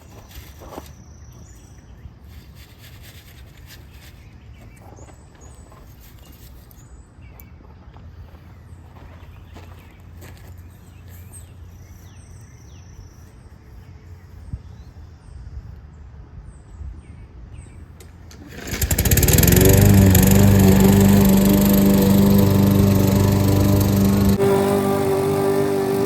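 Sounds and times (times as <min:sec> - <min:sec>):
lawn mower engine: 0:18.2 - 0:26.0.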